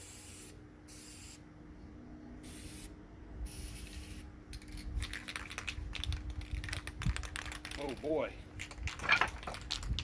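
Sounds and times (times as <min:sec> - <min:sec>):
spray-paint can hissing: 0:00.0 - 0:01.4, 0:02.4 - 0:04.2.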